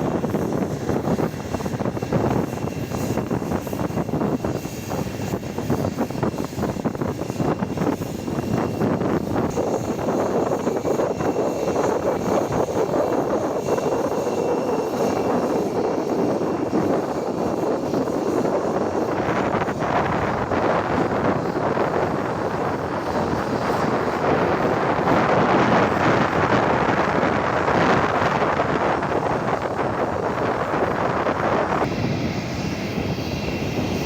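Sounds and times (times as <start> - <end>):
jet engines running: 0.0 - 34.0.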